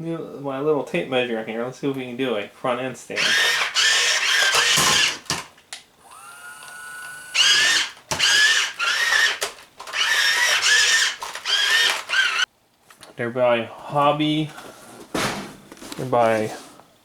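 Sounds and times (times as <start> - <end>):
toy electric motors whining: 3.2 - 12.5.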